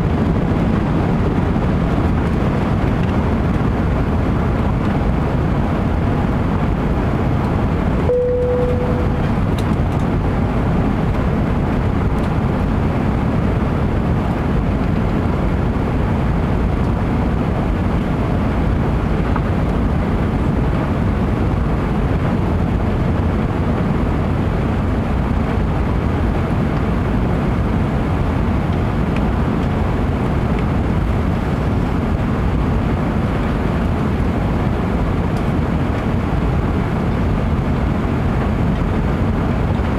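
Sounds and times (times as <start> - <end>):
airliner cabin engine noise: 0.0 - 39.9
brief single tone: 8.0 - 9.6.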